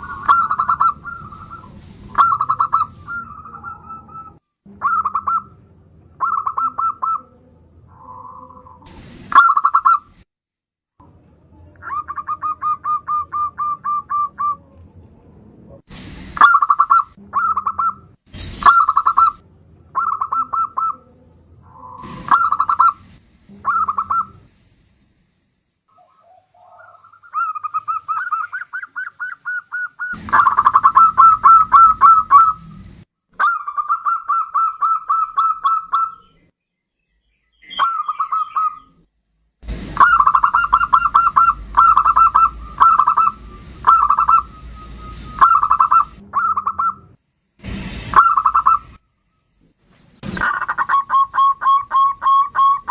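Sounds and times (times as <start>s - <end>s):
dove cooing: 0.0s - 5.5s, 6.2s - 10.0s, 11.8s - 14.8s, 20.0s - 23.0s, 23.6s - 24.4s, 25.9s - 32.7s, 40.0s - 44.6s, 45.2s - 47.1s, 50.4s - 52.9s.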